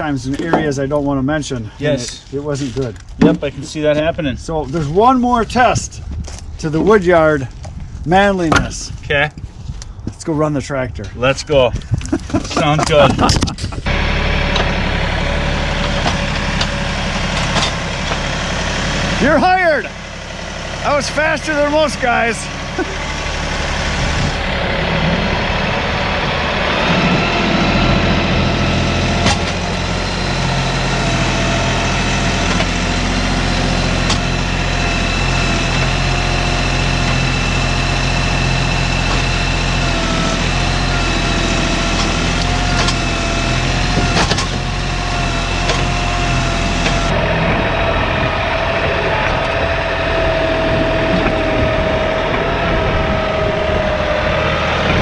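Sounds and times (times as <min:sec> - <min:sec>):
diesel tractor engine running: 0:11.2 - 0:55.0
sharp knocks: 0:29.2 - 0:29.7
high whine: 0:42.3 - 0:55.0.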